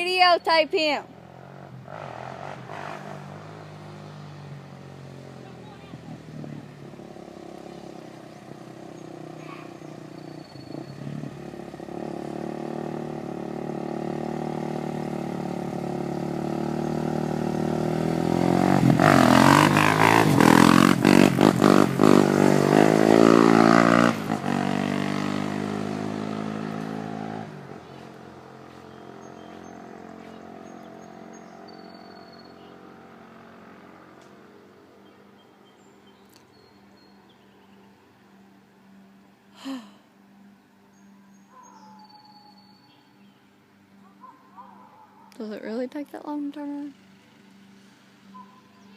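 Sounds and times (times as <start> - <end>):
vehicle engine passing by: 0.0 - 41.9, 43.0 - 48.9.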